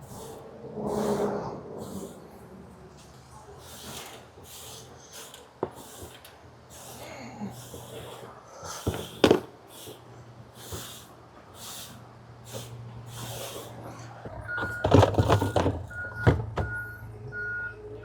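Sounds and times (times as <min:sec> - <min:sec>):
truck reversing beeper: 0:14.1 - 0:18.0
knocks and clatter: 0:14.2 - 0:16.8.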